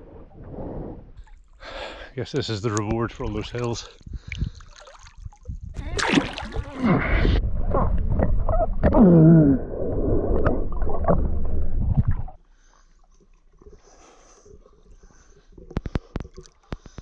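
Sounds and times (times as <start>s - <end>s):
water splashing and gurgling: 3.2s - 12.4s
person crying out: 5.8s - 7.0s.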